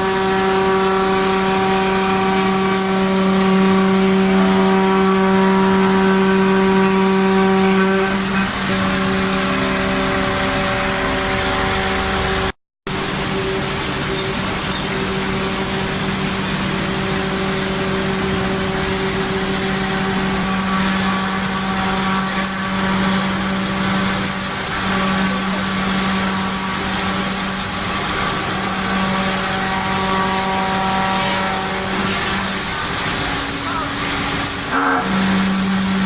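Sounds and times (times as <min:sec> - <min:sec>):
constant machine hum: 0:00.0 - 0:36.0
wood router cutting wood: 0:16.8 - 0:36.0.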